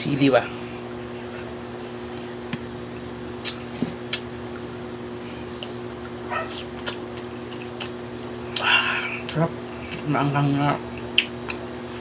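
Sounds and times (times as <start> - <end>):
steady low hum: 0.0 - 12.0
chewing clicks and smacks: 3.4 - 4.6, 5.6 - 8.7, 11.0 - 11.6.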